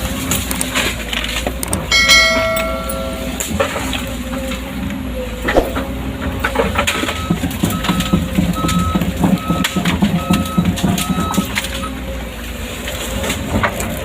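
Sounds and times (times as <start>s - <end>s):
travel alarm beeping: 7.1s - 11.5s.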